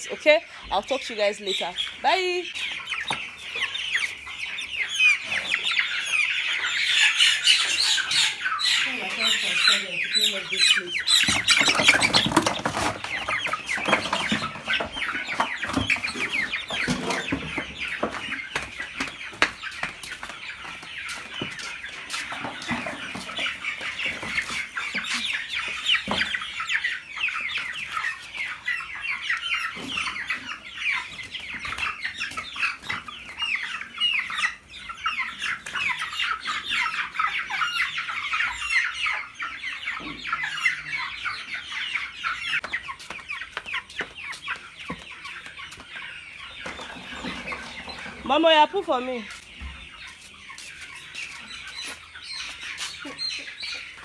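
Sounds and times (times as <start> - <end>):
chickens peeping and clucking: 0.0 - 54.0.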